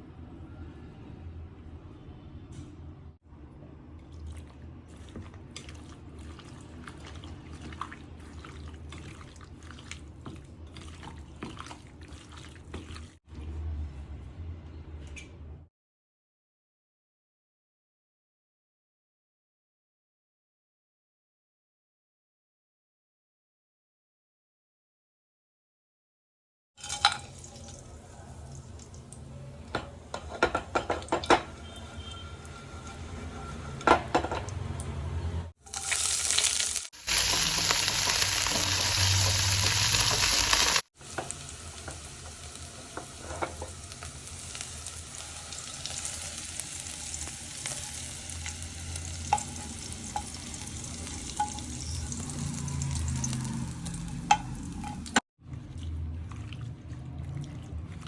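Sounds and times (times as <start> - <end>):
food sizzling in a pan: 35.6 - 55.2.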